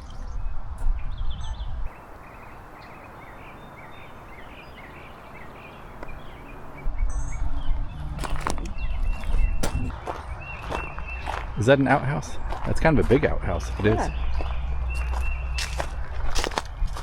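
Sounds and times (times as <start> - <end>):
low rumbling on microphone: 0.0 - 1.9, 6.3 - 17.0
small birds chirping: 0.0 - 17.0.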